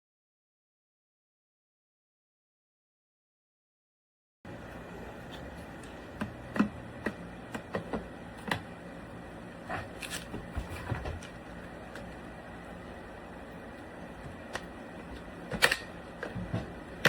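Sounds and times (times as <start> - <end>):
steady low hum: 4.5 - 17.0.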